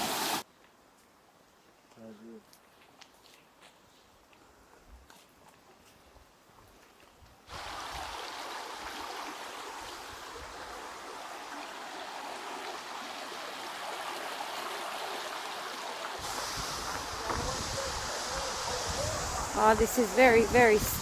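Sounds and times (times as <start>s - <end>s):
stream water rushing over rocks: 0.0s - 0.4s, 7.5s - 21.0s.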